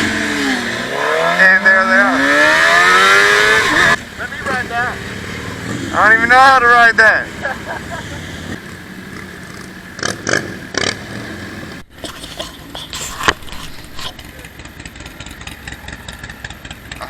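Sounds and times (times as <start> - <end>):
motorcycle engines idling: 0.0 - 17.0
people talking: 1.0 - 8.2, 12.0 - 14.6.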